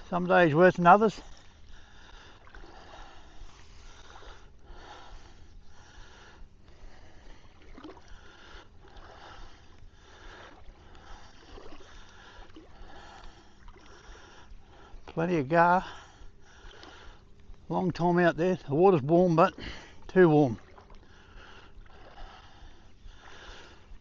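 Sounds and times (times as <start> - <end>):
water sloshing around wading legs: 0.0 - 24.0.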